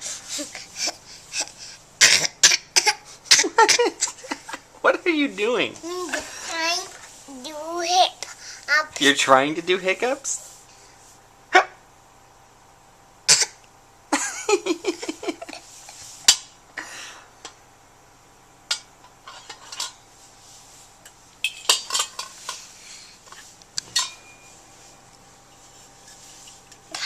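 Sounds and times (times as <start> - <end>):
child fake hiccups: 0.4 - 4.1, 13.3 - 13.6.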